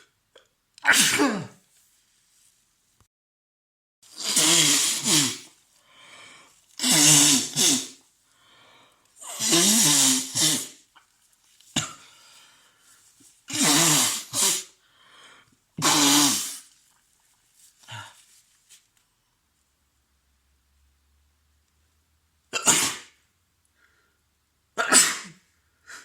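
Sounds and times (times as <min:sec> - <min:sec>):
man sneezing: 0:00.8 - 0:01.6, 0:04.1 - 0:05.5, 0:06.8 - 0:08.0, 0:09.3 - 0:10.8, 0:13.5 - 0:14.8, 0:15.8 - 0:16.7, 0:24.8 - 0:26.0
breaths and sniffs: 0:04.1 - 0:10.8.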